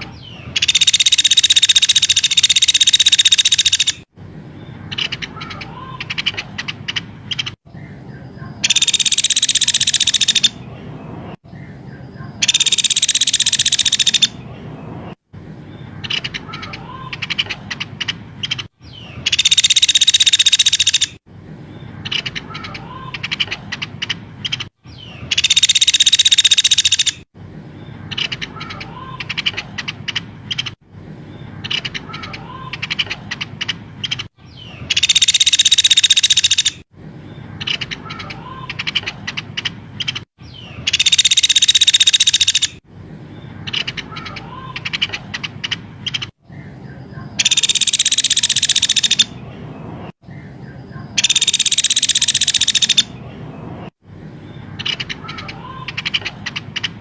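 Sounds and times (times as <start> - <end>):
clicking bird chirps: 0.0 - 4.0, 4.9 - 7.6, 8.6 - 10.6, 12.4 - 14.4, 16.1 - 21.2, 22.1 - 27.2, 34.9 - 36.8, 40.9 - 42.8, 47.4 - 49.3, 51.2 - 53.1
buzzy high-pitched bird trills: 0.0 - 4.1, 8.6 - 10.6, 12.4 - 14.4, 15.9 - 21.2, 22.0 - 27.3, 31.6 - 42.8, 47.4 - 49.4, 51.1 - 53.2.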